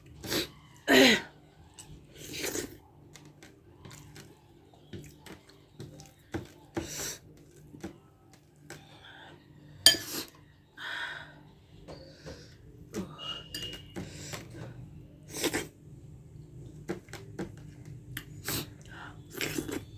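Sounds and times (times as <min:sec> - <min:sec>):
dishes and cutlery clinking: 0:09.8 - 0:10.4, 0:13.3 - 0:14.5.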